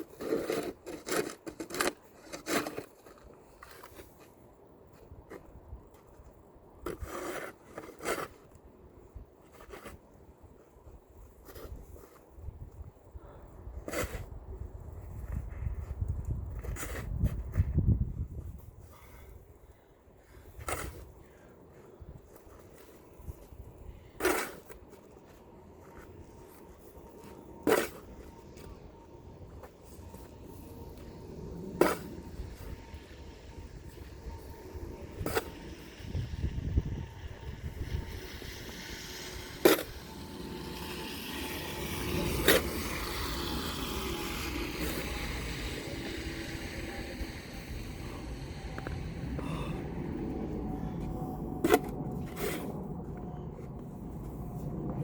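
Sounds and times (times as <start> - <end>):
snow shovel scraping: 0.0 - 4.3, 6.9 - 8.6, 13.8 - 14.3, 22.5 - 36.3, 37.2 - 49.7, 51.6 - 52.8.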